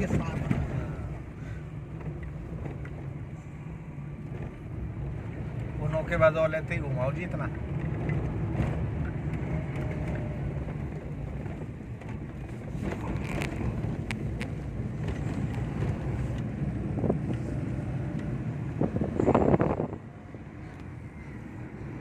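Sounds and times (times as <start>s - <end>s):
vehicle engine and road rumble: 0.0s - 22.0s
wind buffeting microphone: 7.6s - 22.0s.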